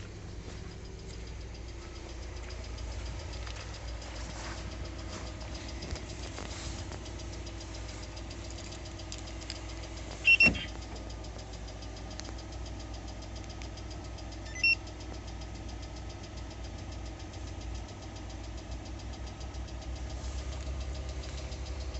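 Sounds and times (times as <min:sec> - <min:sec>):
car engine knocking: 0:00.0 - 0:21.9
short high beeps: 0:10.2 - 0:10.7, 0:14.5 - 0:14.8.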